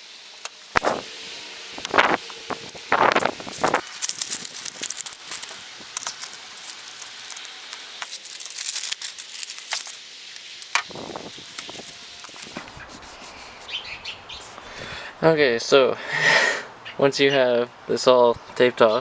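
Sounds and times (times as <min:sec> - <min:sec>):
tape being pulled and pressed: 0:00.4 - 0:01.2, 0:01.8 - 0:12.6
paper sheets crinkling: 0:00.6 - 0:01.2, 0:01.8 - 0:13.6.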